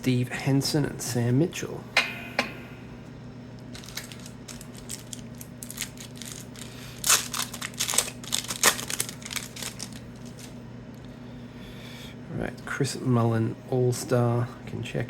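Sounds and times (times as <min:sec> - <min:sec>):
foil wrapper crinkling and tearing: 0:03.6 - 0:10.6.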